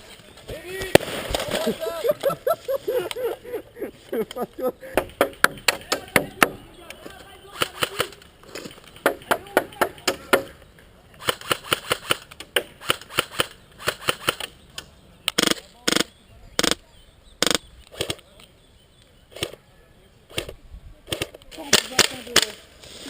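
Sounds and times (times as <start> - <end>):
airsoft guns firing: 7.5 - 8.2, 8.9 - 10.6, 15.4 - 16.8, 17.4 - 18.2.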